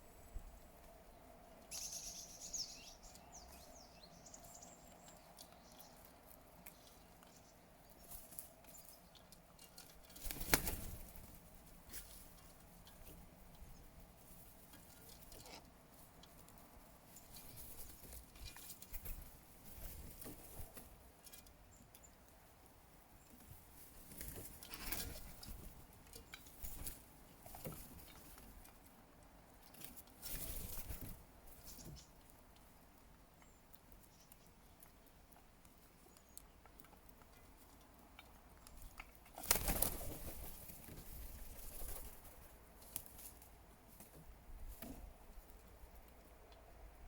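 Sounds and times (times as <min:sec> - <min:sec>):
crows pecking and tapping: 0:03.0 - 0:47.0
wing flapping: 0:10.0 - 0:12.2, 0:39.3 - 0:43.4.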